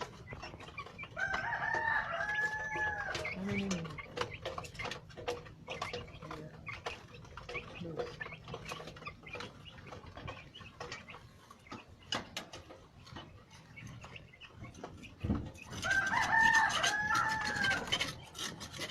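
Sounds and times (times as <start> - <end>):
faint clicks and scratches: 0.0 - 18.9
rooster crowing: 1.2 - 3.2, 15.8 - 18.0.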